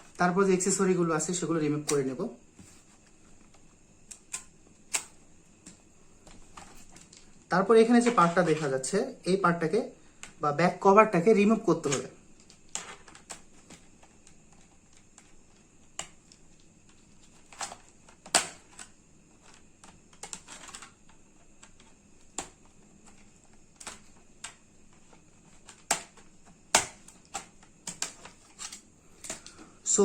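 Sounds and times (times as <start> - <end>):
plastic cover clicking: 11.8 - 29.6.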